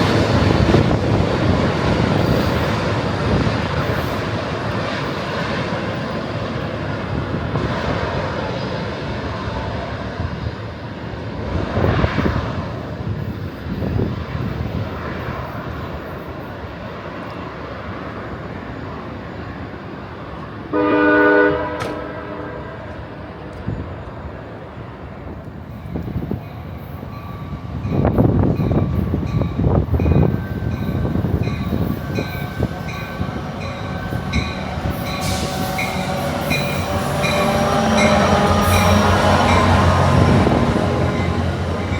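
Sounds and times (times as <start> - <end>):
train rumbling: 0.0 - 41.9
locomotive horn blast: 20.7 - 23.0, 33.6 - 41.9.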